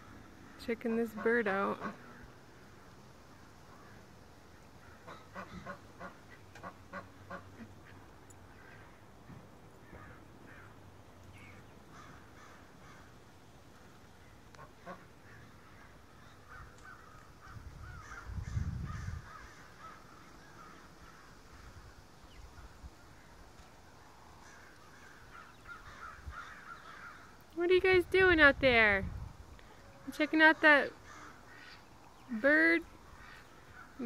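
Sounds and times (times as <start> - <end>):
faint chattering bird calls: 9.8 - 27.5, 29.6 - 34.0.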